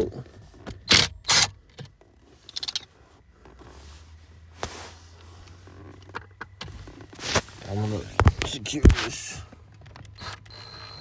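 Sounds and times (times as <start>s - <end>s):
short scrapes: 7.2s - 8.1s
cordless drill: 10.2s - 11.0s.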